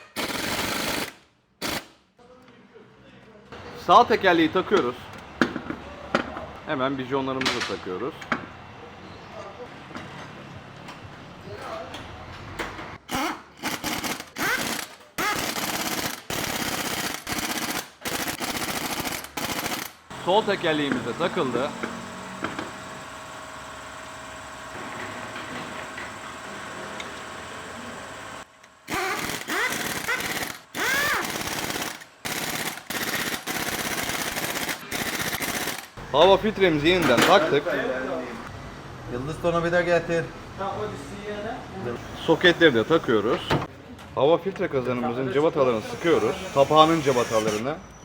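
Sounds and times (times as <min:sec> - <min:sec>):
pneumatic impact wrench rattling: 0:00.0 - 0:02.0, 0:13.0 - 0:26.4, 0:28.8 - 0:36.0, 0:42.0 - 0:43.7, 0:45.7 - 0:47.7.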